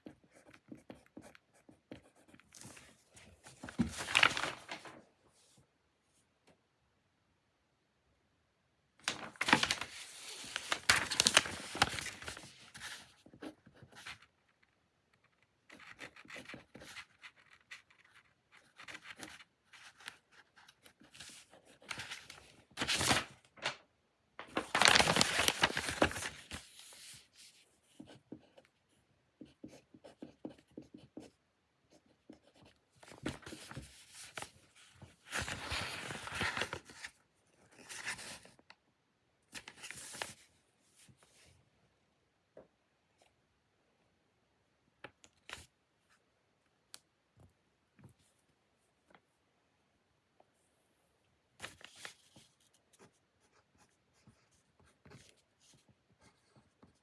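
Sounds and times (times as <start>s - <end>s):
paper rustling: 2.6s - 5.0s, 9.0s - 14.3s, 15.7s - 23.8s, 24.4s - 27.6s, 33.0s - 37.2s, 37.8s - 38.6s, 39.5s - 40.5s.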